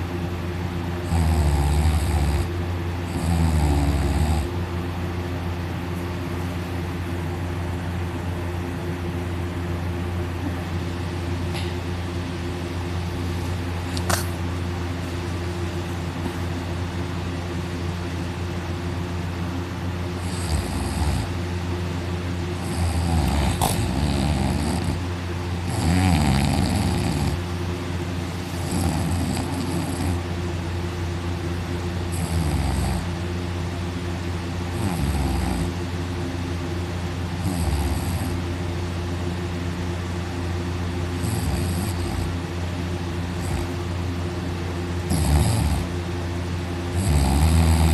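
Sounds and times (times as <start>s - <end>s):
steady background hum: 0.0s - 47.9s
man snoring loudly: 1.0s - 2.5s, 3.1s - 4.5s, 20.2s - 21.4s, 22.6s - 25.0s, 25.6s - 27.4s, 28.6s - 30.2s, 32.1s - 33.1s, 34.7s - 35.8s, 37.4s - 38.4s, 41.2s - 42.4s, 43.4s - 43.8s, 45.1s - 46.0s, 46.9s - 47.9s.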